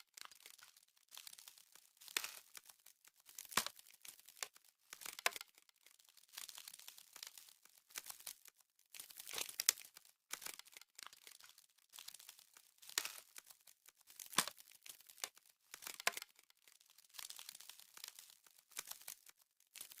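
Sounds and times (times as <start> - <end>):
icy crackling and crinkling: 0.0 - 20.0
sharp cracks: 3.4 - 4.4, 14.2 - 15.0.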